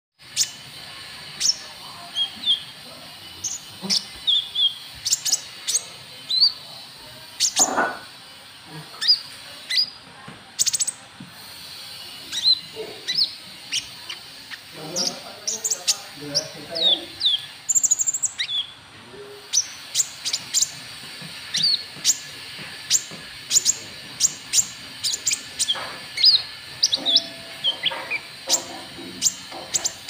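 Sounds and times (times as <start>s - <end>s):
bird chirping: 1.4s - 6.7s, 12.0s - 30.0s.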